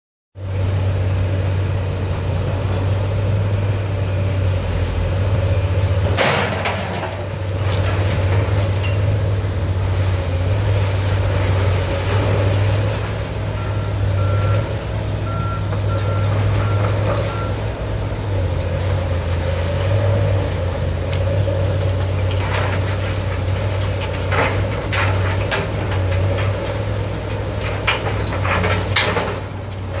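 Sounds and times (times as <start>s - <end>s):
diesel engine running: 0.4s - 30.0s
debris crashing and knocking: 6.0s - 9.2s, 21.7s - 30.0s
reversing alarm beeping: 13.6s - 17.7s.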